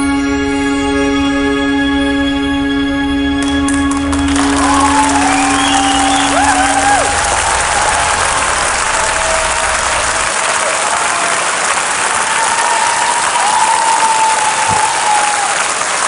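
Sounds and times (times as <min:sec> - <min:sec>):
low music: 0:00.0 - 0:10.8
large audience applauding: 0:03.4 - 0:16.0.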